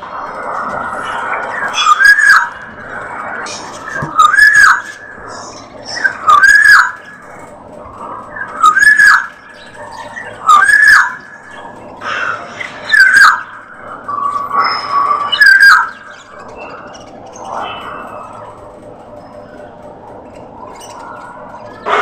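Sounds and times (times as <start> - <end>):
budgerigars squawking: 15.3 - 16.0.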